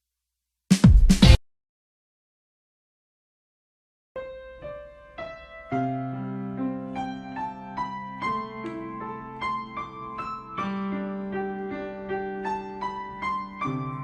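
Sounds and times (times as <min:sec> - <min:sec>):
slow piano music: 0:04.2 - 0:14.0.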